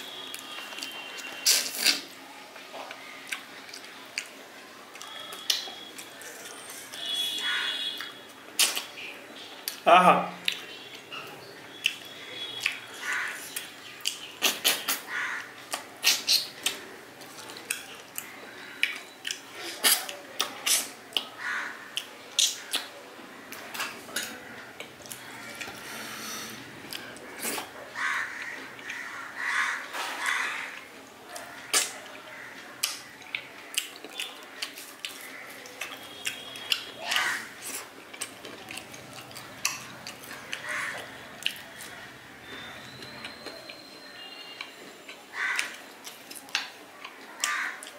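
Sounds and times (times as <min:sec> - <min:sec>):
chewing and lip smacks: 0:15.7 - 0:21.3, 0:22.0 - 0:25.8, 0:32.8 - 0:43.8, 0:44.6 - 0:47.9.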